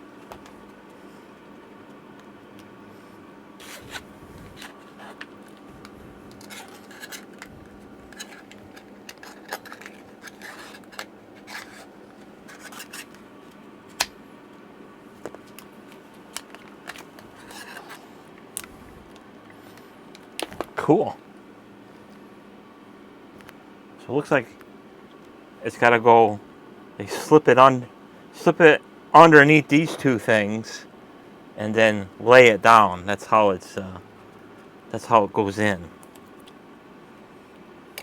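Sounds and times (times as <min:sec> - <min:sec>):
faint steady hum: 0:00.0 - 0:38.0
scraping and rubbing: 0:06.2 - 0:13.2, 0:17.2 - 0:18.0.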